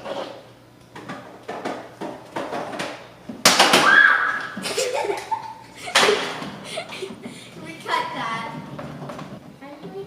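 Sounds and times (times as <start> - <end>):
voices: 6.7 - 8.7.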